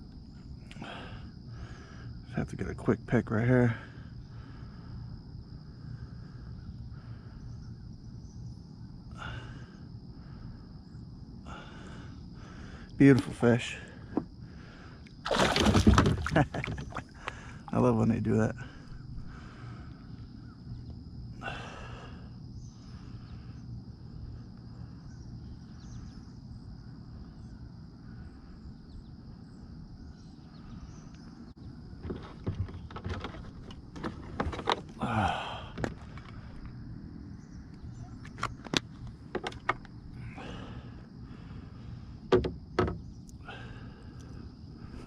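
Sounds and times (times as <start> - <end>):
steady low hum: 0.0 - 45.0
clicks and knocks of handling gear: 32.0 - 35.0, 35.8 - 36.7, 38.2 - 39.9.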